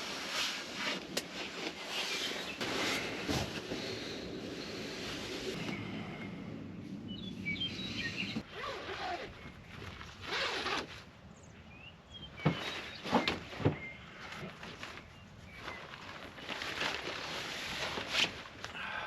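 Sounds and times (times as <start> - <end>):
clothes rustling and handling: 0.0 - 5.8, 12.4 - 18.7
faint bird chirps: 7.0 - 8.4.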